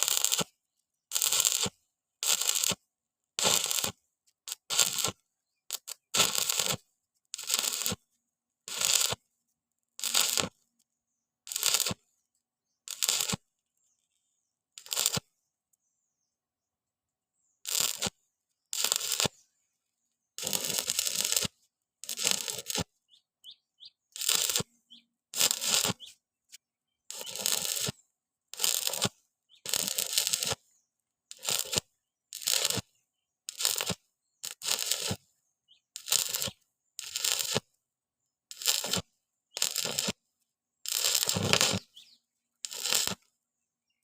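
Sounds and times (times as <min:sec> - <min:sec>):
arc welding crackling: 0:00.0 - 0:00.5, 0:01.1 - 0:02.8, 0:03.4 - 0:08.0, 0:08.7 - 0:09.2, 0:10.0 - 0:10.6, 0:11.5 - 0:12.0, 0:12.9 - 0:13.4, 0:14.8 - 0:15.3, 0:17.6 - 0:19.4, 0:20.4 - 0:26.2, 0:27.1 - 0:30.6, 0:31.3 - 0:32.9, 0:33.5 - 0:37.7, 0:38.5 - 0:40.2, 0:40.8 - 0:43.3.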